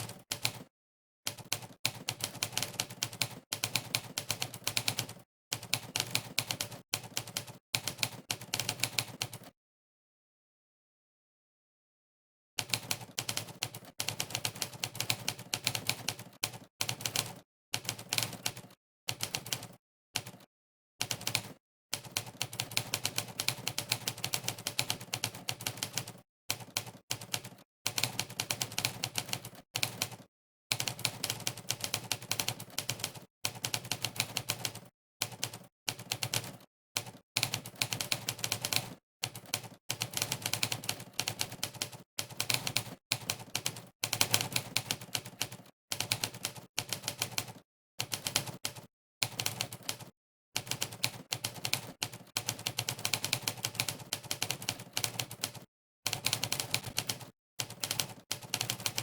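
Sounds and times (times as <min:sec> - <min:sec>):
typewriter keystroke clacks: 0:01.3 - 0:09.5, 0:12.6 - 0:59.0.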